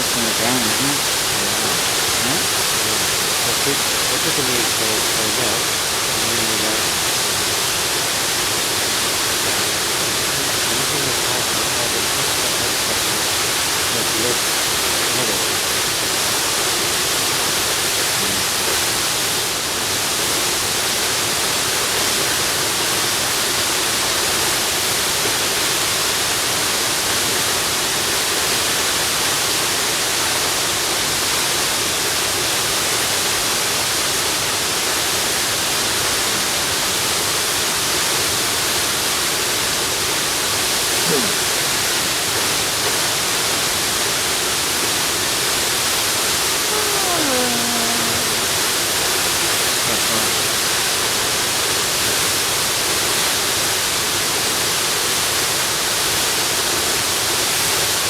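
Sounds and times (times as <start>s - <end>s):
waterfall rushing: 0.0s - 31.2s.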